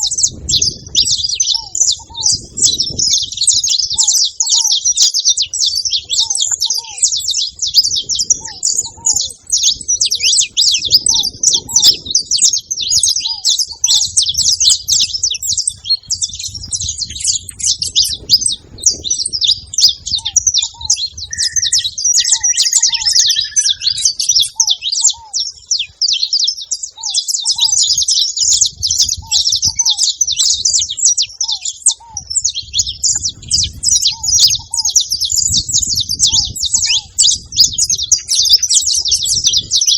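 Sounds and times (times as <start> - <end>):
whistled bird call: 0.0 - 14.8, 18.9 - 33.0, 36.2 - 39.9
finches chattering: 0.0 - 39.9
low short bird note: 21.2 - 24.1.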